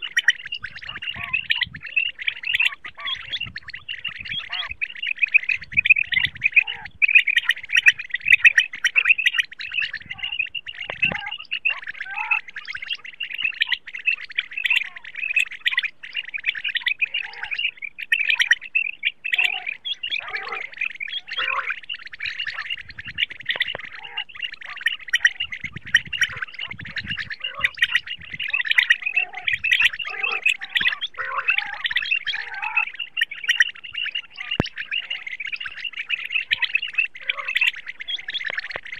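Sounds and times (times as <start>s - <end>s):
quail chirping and calling: 0.0s - 38.9s.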